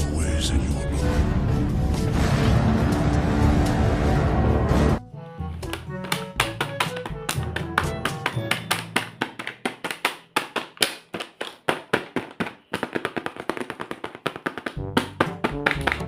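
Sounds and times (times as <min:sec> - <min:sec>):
background music with fast percussive beat: 0:05.5 - 0:09.9, 0:12.8 - 0:16.0.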